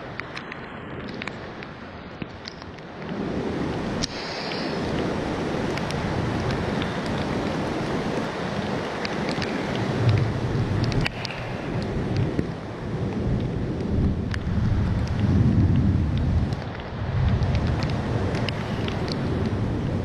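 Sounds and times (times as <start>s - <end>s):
rain and wind rushing: 0.0s - 20.0s
raindrop ticks: 0.0s - 20.0s
low thunder rumble: 9.9s - 20.0s.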